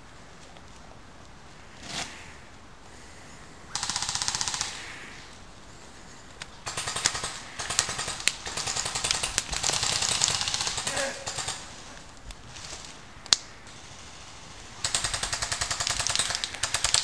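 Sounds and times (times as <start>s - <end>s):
airsoft guns firing: 3.7s - 5.1s, 6.6s - 11.8s, 13.7s - 17.0s.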